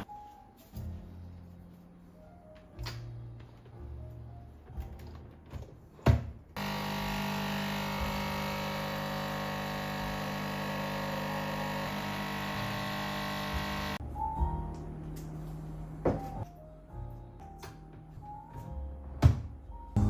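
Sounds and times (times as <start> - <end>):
motorised appliance humming: 6.6 - 14.0.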